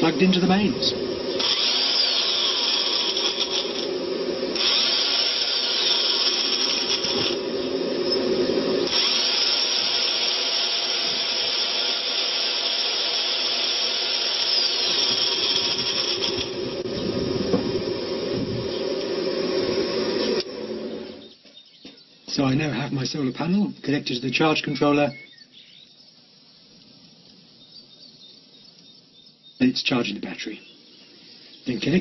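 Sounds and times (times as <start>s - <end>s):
electric drill spinning: 0.0s - 21.2s
cooling fan whirring: 0.0s - 24.1s.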